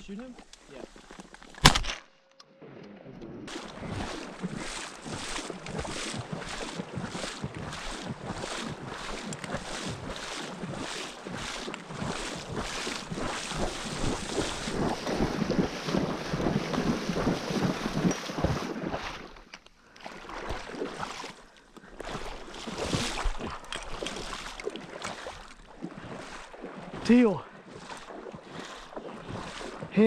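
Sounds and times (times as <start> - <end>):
water splashing and sloshing: 3.4 - 30.0
wind on microphone: 12.0 - 19.1.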